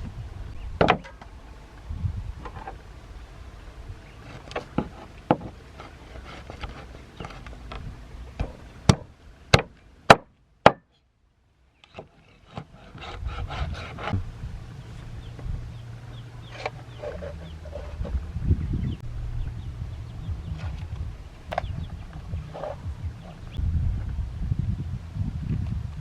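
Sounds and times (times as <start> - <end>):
knocking and scraping on wood: 4.2 - 9.1, 20.5 - 23.5.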